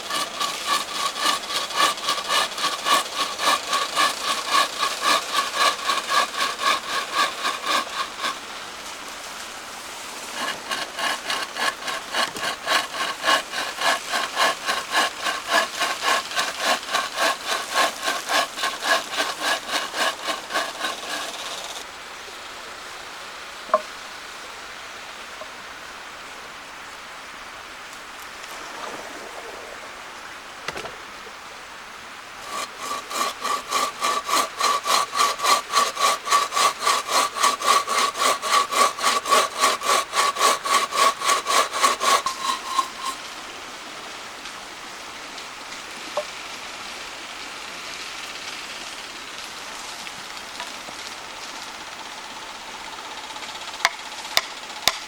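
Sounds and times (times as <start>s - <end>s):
hand saw cutting wood: 0.0s - 21.8s, 32.4s - 43.4s, 54.4s - 55.0s.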